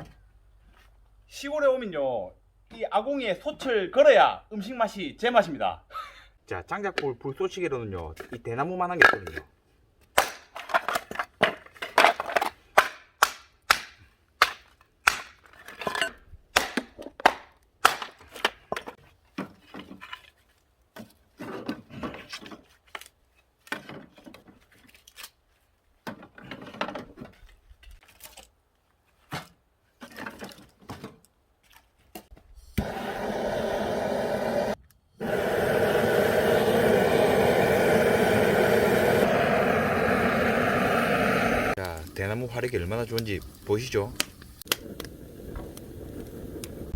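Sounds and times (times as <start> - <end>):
bamboo cracking and snapping: 10.0 - 10.6, 12.2 - 15.6, 16.5 - 18.6, 24.8 - 25.5, 28.0 - 28.9
fire burning with rushing noise: 32.8 - 46.9.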